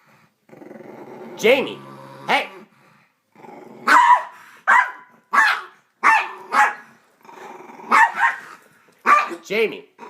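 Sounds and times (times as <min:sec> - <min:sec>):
dog growling: 0:00.1 - 0:04.0, 0:06.3 - 0:08.7
dog barking: 0:03.9 - 0:06.9, 0:07.9 - 0:09.4.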